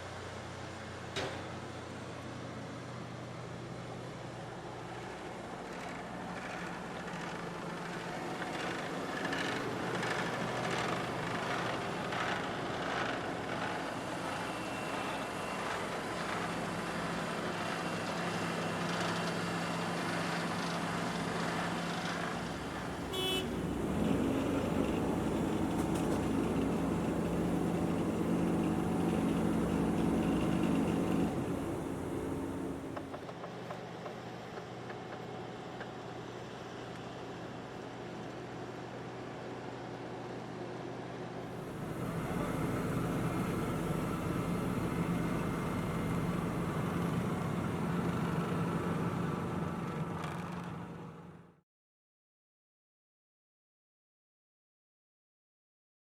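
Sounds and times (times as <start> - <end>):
paving machinery engines running: 0.2 - 33.2, 41.6 - 51.5
heavier engine roaring: 22.2 - 33.1, 41.6 - 51.4.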